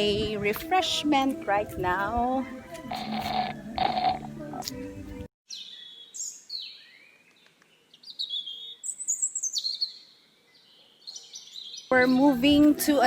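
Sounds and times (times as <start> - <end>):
birds chirping and singing: 5.5 - 12.9.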